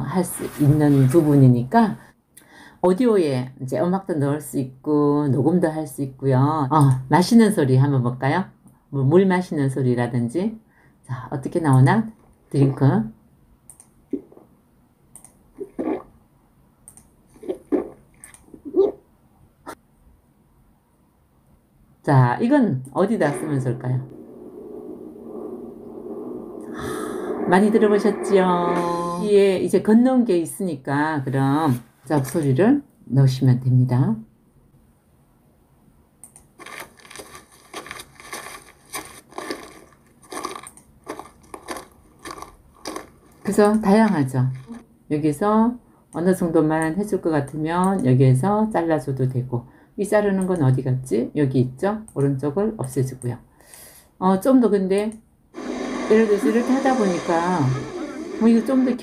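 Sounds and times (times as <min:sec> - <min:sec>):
person gulping water: 0:14.1 - 0:14.6, 0:15.6 - 0:16.2, 0:17.3 - 0:19.0
sharp noisy bursts: 0:55.6 - 0:59.0.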